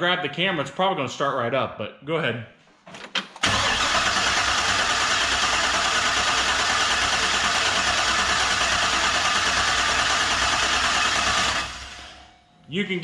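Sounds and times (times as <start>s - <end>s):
engine cranking without firing: 3.4s - 12.2s.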